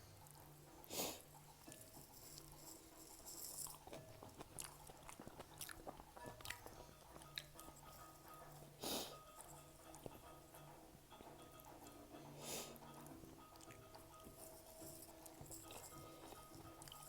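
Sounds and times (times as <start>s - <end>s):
chewing: 0.1s - 10.3s, 12.8s - 17.0s.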